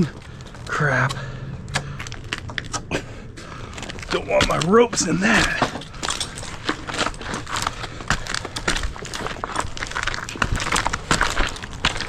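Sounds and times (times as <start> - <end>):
rustling: 3.4 - 12.0.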